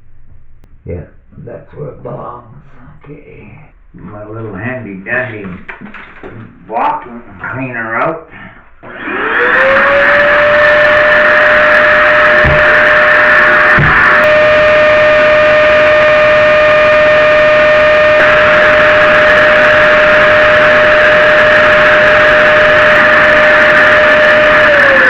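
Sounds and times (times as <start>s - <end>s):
vacuum cleaner running: 8.8s - 25.0s.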